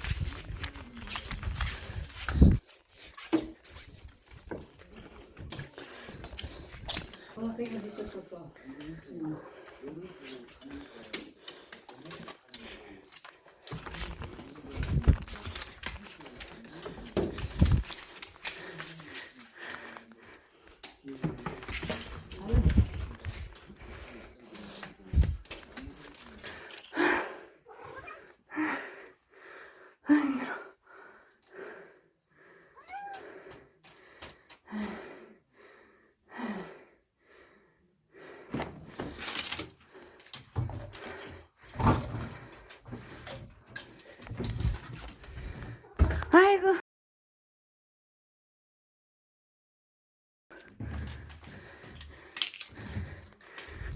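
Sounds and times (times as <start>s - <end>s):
claws and toy clattering on floor: 0.0s - 8.2s, 10.2s - 27.0s, 38.6s - 46.4s, 50.6s - 53.9s
cat scuffling and rustling: 0.0s - 8.3s, 9.8s - 26.8s
cat breathing: 0.0s - 46.2s, 50.6s - 53.9s.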